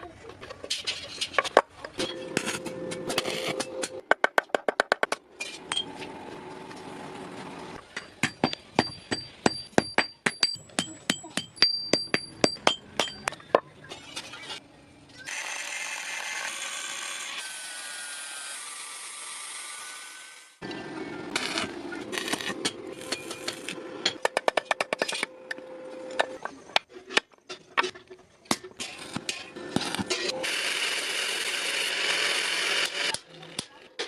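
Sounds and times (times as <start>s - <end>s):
hammer striking metal on anvil: 7.9s - 13.4s.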